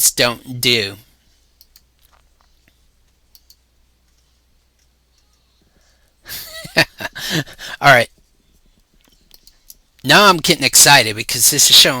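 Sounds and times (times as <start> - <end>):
man talking: 0.0 - 1.1, 6.8 - 8.1, 10.0 - 12.0
computer mouse clicks: 1.6 - 5.4, 8.8 - 9.8.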